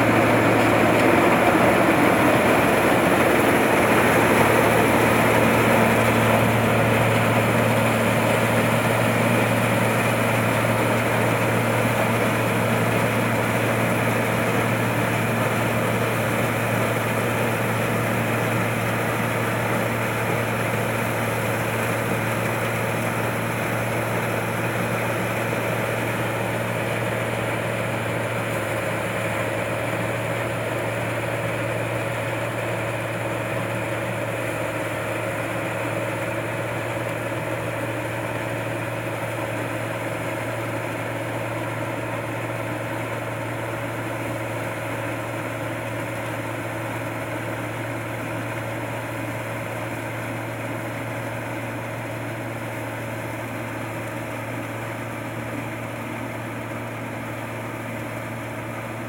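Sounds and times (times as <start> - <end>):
combine harvester engine humming: 0.0 - 59.0.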